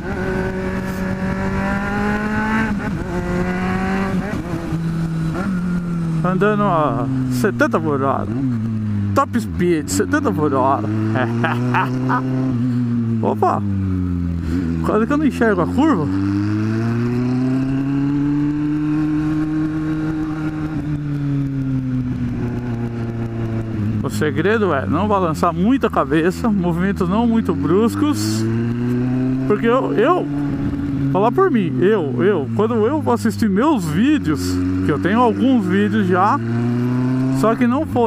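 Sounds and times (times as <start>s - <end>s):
wind rush on microphone: 0.0s - 6.2s, 19.3s - 24.0s, 30.4s - 31.2s
motorcycle engine running: 0.0s - 38.0s.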